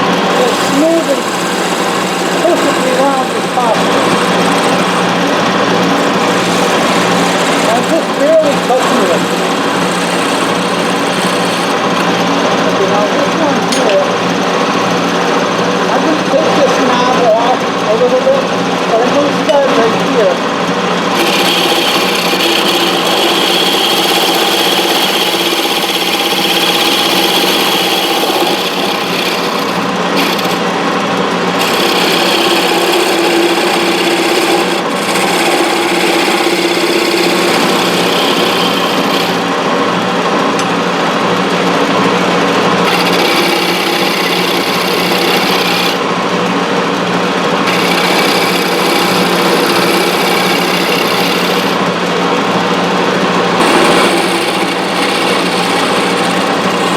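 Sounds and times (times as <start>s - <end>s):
tool cutting wood hissing: 0.0s - 12.7s, 21.0s - 40.7s, 42.3s - 52.0s, 53.6s - 56.9s
lathe motor hum: 0.0s - 56.9s.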